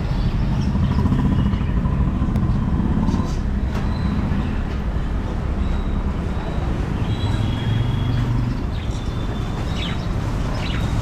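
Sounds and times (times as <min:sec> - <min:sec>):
budgerigars chirping: 0:08.6 - 0:11.0.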